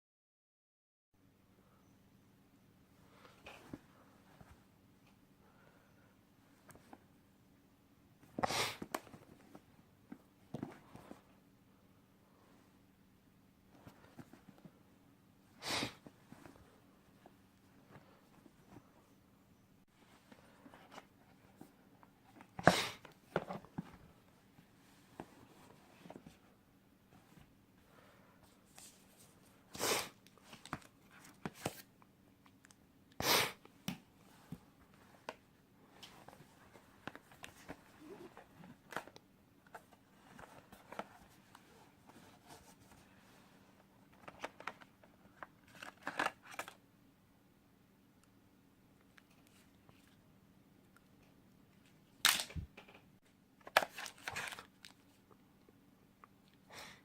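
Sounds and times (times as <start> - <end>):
handling packaging clicks and rustles: 30.2 - 32.8, 33.8 - 43.1, 43.7 - 46.8, 53.6 - 55.4.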